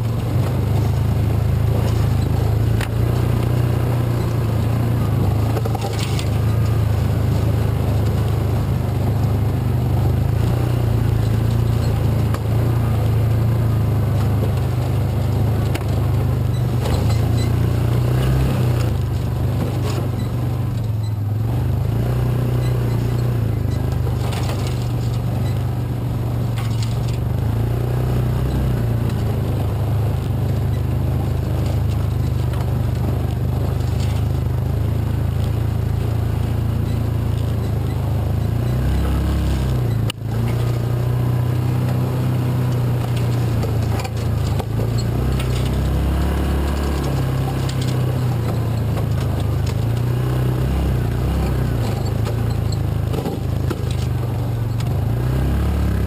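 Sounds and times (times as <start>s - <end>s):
off-road vehicle engine droning: 0.0s - 56.0s.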